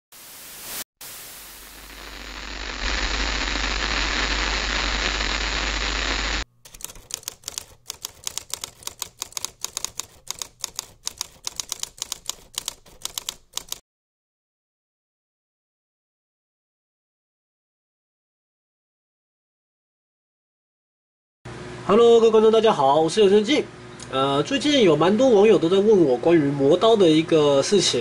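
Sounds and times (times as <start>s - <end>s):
hiss: 0.2s - 6.4s
rapid sharp clicks: 6.2s - 13.8s.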